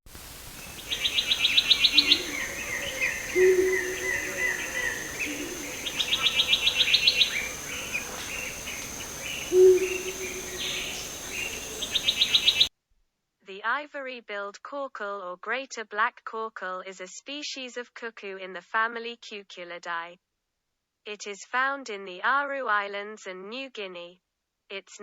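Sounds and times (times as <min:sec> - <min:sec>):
high insect whine: 0:00.1 - 0:12.7
birds trilling: 0:00.2 - 0:12.7
deep hooting bird notes: 0:00.6 - 0:12.7.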